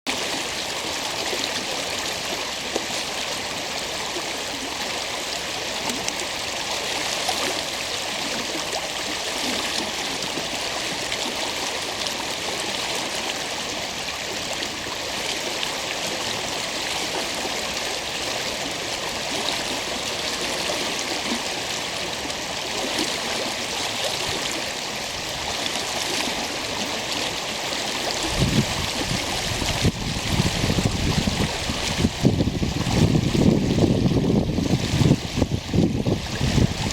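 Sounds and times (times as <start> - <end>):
stream water rushing and gurgling: 0.1 - 36.9
wind buffeting microphone: 28.2 - 36.9.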